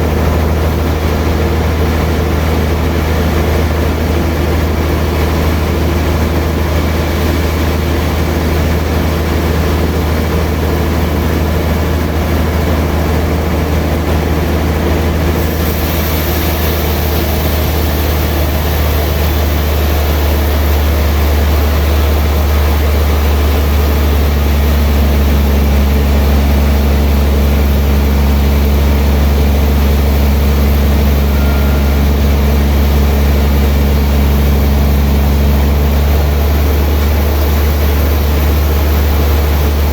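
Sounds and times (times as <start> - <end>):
sawmill machinery humming: 0.0 - 39.9
high hiss: 15.4 - 24.9, 28.8 - 33.7.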